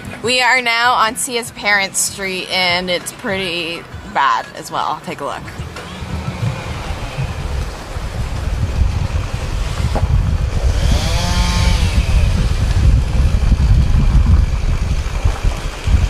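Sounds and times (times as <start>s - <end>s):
rising and falling pitched tone: 5.4s - 12.6s
loud low rumbling: 5.5s - 16.0s.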